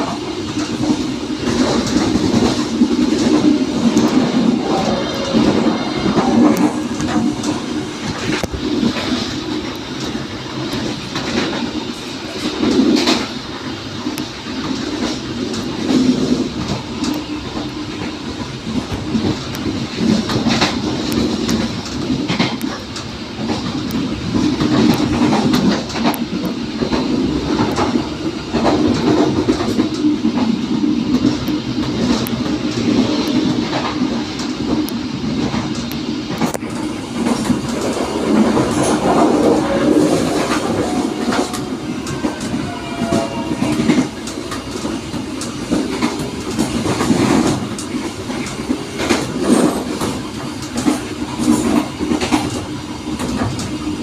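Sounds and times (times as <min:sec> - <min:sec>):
train wheels rumbling on rails: 0:00.0 - 0:54.0
wheels clicking over rail joints: 0:14.0 - 0:53.8.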